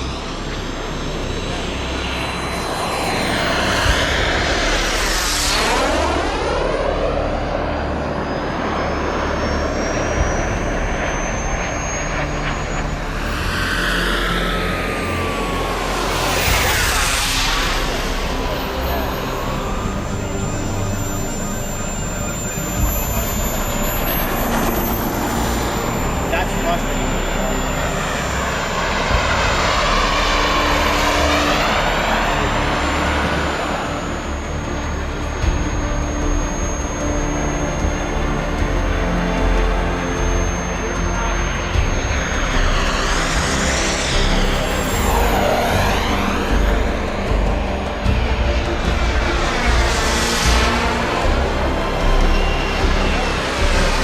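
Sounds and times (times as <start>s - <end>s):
model jet turbine whine: 0.0s - 54.0s
whistling tone falling in pitch: 2.6s - 54.0s.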